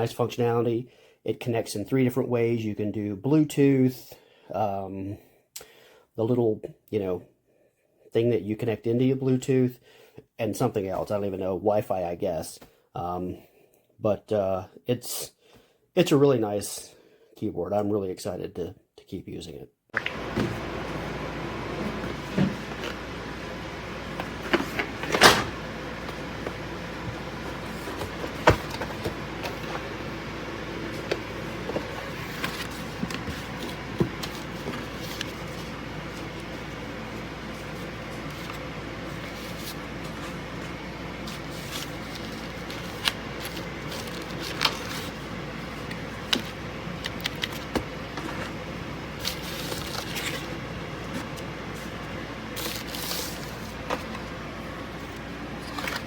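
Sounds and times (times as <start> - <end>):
background hum with faint whine: 16.2 - 56.0.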